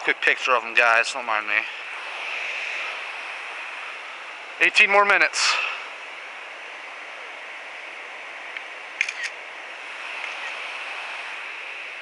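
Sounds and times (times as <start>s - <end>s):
steady hiss: 0.0s - 12.0s
camera shutter clicking: 9.0s - 9.4s.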